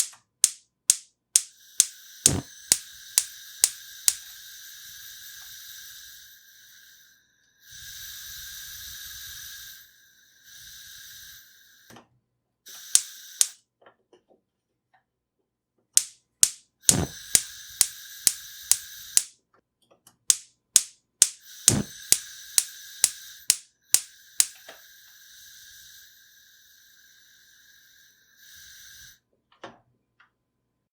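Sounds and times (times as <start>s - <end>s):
gas stove igniter clicks: 0.0s - 4.2s, 12.8s - 13.6s, 16.0s - 19.3s, 20.3s - 24.7s
gas burner hissing: 0.0s - 12.0s, 12.7s - 13.6s, 16.0s - 19.3s, 20.3s - 29.2s.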